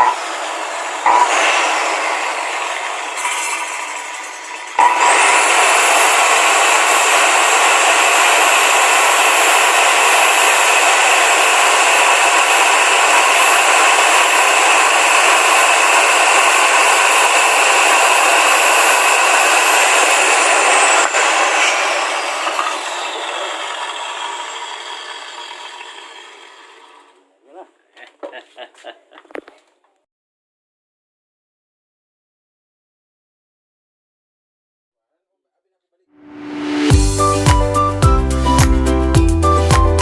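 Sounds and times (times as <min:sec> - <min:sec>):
circular saw motor whining: 0:00.0 - 0:27.2.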